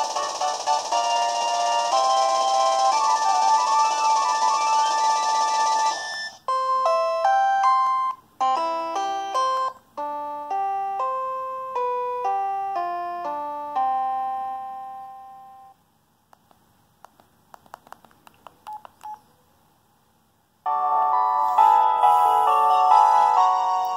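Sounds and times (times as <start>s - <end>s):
phone ringtone melody of bell notes: 0.0s - 15.8s, 20.7s - 23.9s.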